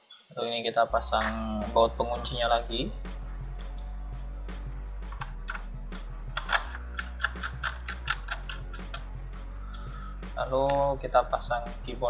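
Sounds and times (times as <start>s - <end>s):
screws and tools clicking on plastic: 6.4s - 9.1s.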